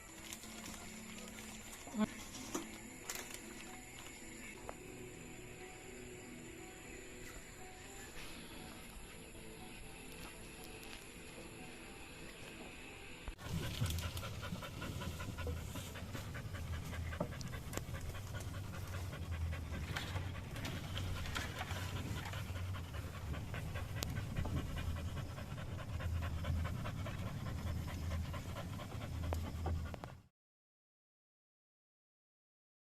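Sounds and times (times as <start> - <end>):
dog panting: 13.4 - 30.3.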